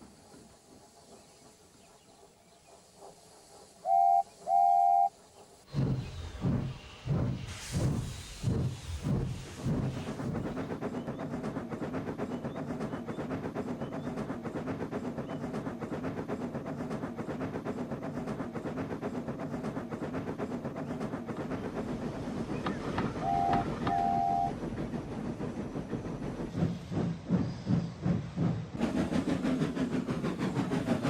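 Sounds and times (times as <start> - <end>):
steam locomotive chuffing: 0.0 - 31.0
train whistle toots: 3.8 - 5.1, 23.2 - 24.5.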